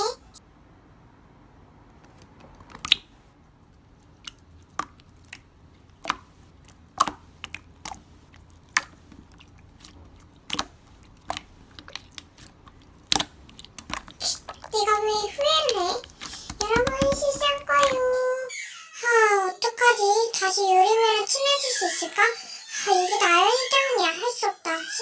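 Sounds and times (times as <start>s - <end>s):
sharp clicks and taps: 4.2s - 18.1s.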